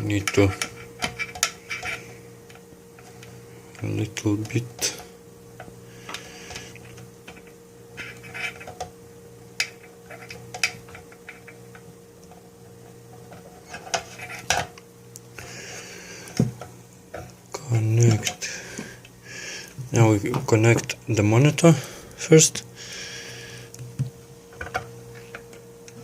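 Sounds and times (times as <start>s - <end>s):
faint electrical hum: 0.0s - 26.0s
cables and plugs clicking: 9.6s - 15.5s.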